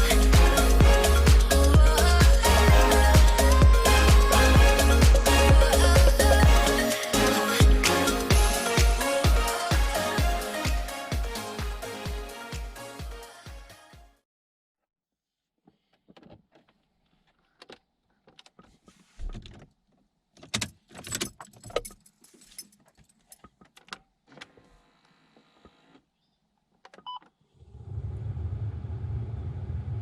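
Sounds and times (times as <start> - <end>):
keys jangling: 21.0 - 23.5.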